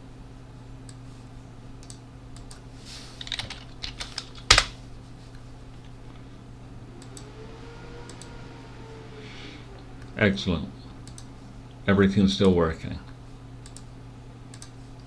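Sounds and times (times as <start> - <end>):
steady low hum: 2.8 - 15.0
keystrokes on computer keyboard: 3.2 - 4.7.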